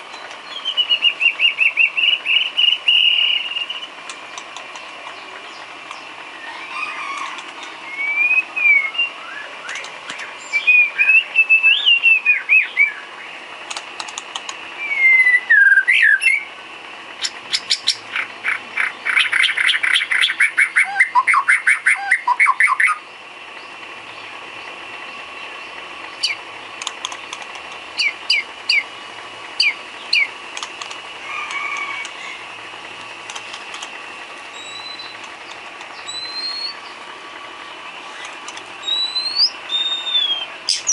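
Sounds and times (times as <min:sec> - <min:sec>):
bird singing whistled phrases: 0:00.4 - 0:03.9, 0:07.8 - 0:09.8, 0:10.4 - 0:13.1, 0:14.8 - 0:16.5, 0:18.8 - 0:23.0, 0:28.0 - 0:28.9, 0:29.6 - 0:30.3, 0:34.6 - 0:35.2, 0:36.0 - 0:36.9, 0:38.8 - 0:40.9.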